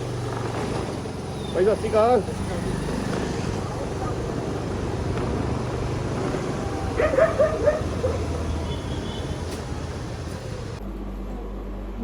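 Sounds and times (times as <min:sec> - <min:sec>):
street traffic rumble: 0:00.0 - 0:11.0
dog barking: 0:06.2 - 0:10.7.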